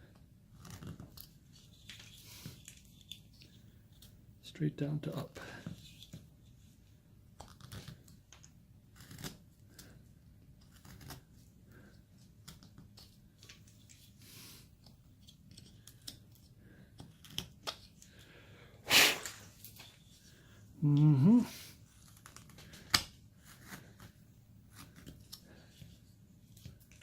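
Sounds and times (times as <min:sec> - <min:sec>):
knife carving wood: 0:00.1 - 0:04.1, 0:07.4 - 0:18.0, 0:21.7 - 0:27.0.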